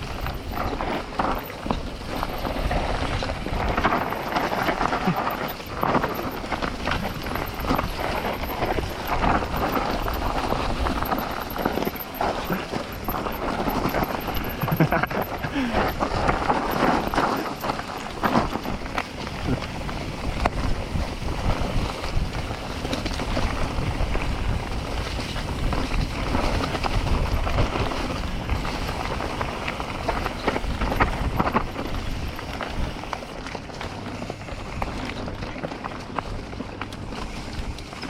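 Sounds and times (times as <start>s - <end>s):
wind rushing over microphone: 0.0s - 33.1s
bike clicks and rattles: 0.0s - 38.0s.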